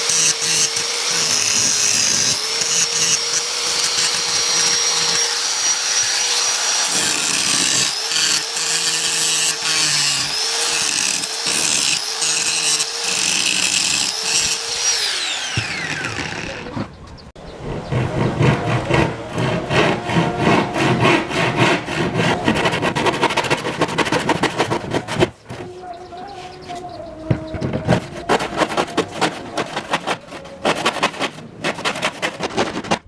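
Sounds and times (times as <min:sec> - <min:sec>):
power tool motor whining: 0:00.0 - 0:16.9.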